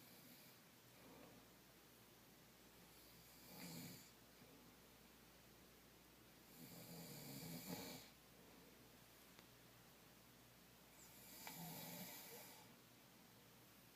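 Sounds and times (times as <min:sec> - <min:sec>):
man snoring faintly: 0:02.9 - 0:04.2, 0:06.5 - 0:08.2, 0:10.9 - 0:12.8.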